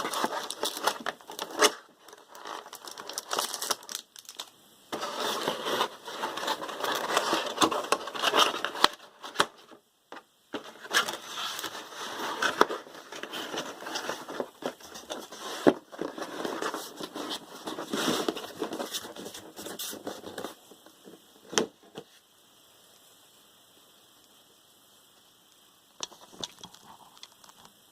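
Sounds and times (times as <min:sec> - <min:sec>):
packaging rustling and crinkling: 0:00.0 - 0:09.8, 0:10.5 - 0:21.2.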